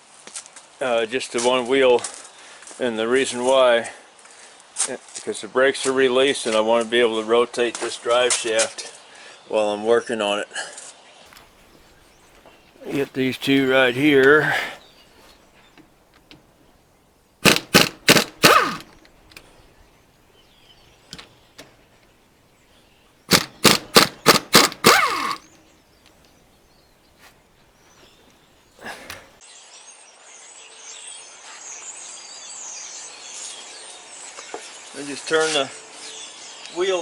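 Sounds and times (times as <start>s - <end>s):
impact wrench hammering: 17.4s - 19.5s, 23.3s - 25.5s.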